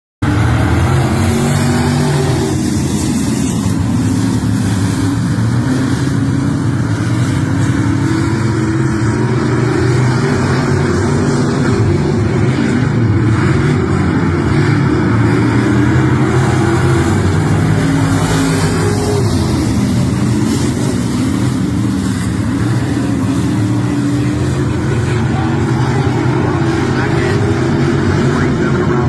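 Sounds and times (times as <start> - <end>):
race car engine running: 0.2 - 29.0.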